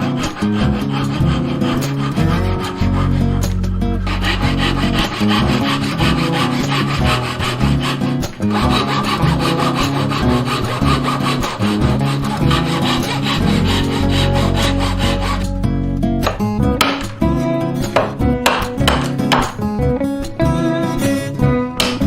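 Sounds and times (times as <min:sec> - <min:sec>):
rasping strokes of hand tool: 0:00.0 - 0:15.5
background music with bass line: 0:00.0 - 0:22.0.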